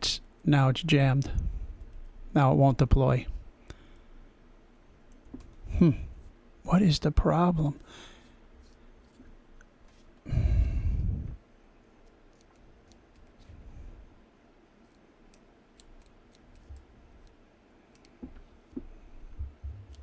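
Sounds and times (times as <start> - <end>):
person sighing: 5.7 - 6.2, 10.3 - 11.3.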